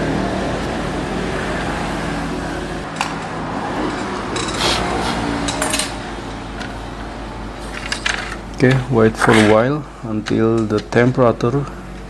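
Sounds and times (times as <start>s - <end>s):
fan whirring: 0.0s - 12.0s
low electrical hum: 0.0s - 12.0s
tools clicking and rattling: 3.9s - 6.1s, 7.6s - 9.6s.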